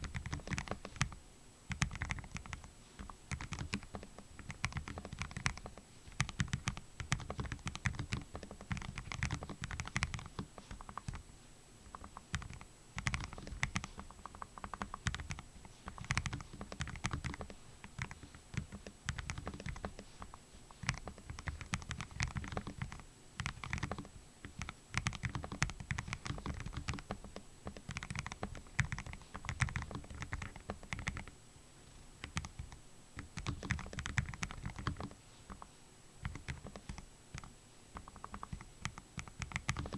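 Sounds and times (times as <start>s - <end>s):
mechanical keyboard typing: 0.0s - 11.2s, 11.8s - 31.3s, 32.2s - 39.9s.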